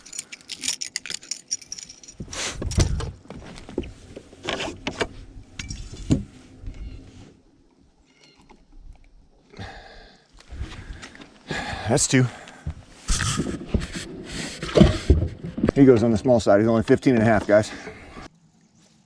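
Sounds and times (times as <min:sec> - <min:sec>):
knocks and thumps on boat deck: 0:14.6 - 0:15.9.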